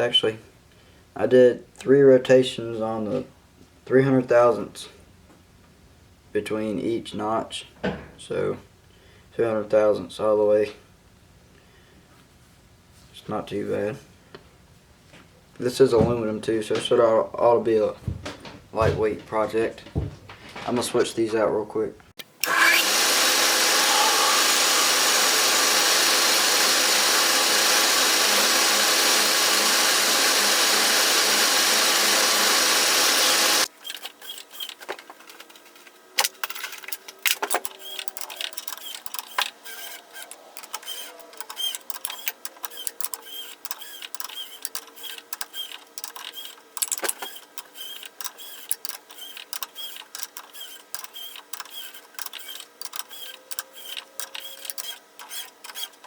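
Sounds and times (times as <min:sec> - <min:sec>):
sharp knocks: 0:18.0 - 0:21.0
shop machine running loudly: 0:22.4 - 0:33.7, 0:37.4 - 0:56.0
quieter mechanical running: 0:36.2 - 0:56.0.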